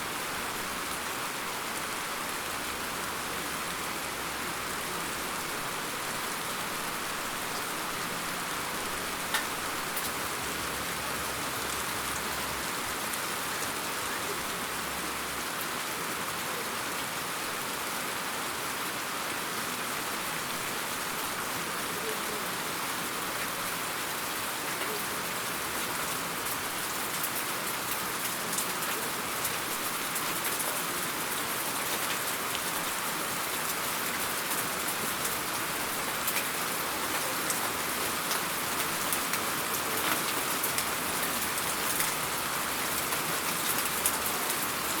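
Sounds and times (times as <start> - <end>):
steady rain hiss: 0.0 - 45.0
raindrop ticks: 9.3 - 10.2.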